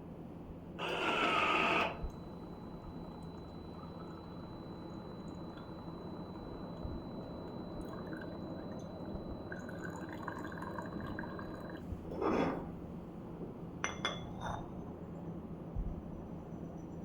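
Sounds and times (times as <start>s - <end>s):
coffee maker brewing: 0.8s - 12.0s
water dripping into carafe: 2.7s - 11.8s.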